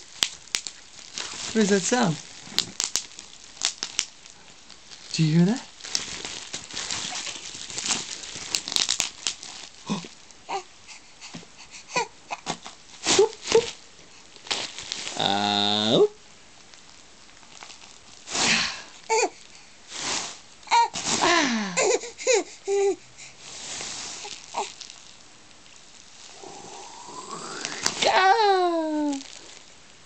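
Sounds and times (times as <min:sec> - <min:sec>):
bubble wrap popping: 0:00.0 - 0:10.4, 0:12.4 - 0:15.4, 0:16.6 - 0:19.2, 0:19.9 - 0:21.7, 0:23.5 - 0:30.0
baby laughing and squealing: 0:20.7 - 0:23.0.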